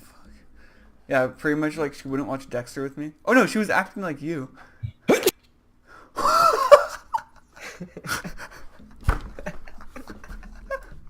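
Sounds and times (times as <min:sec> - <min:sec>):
person sneezing: 0:05.1 - 0:05.3.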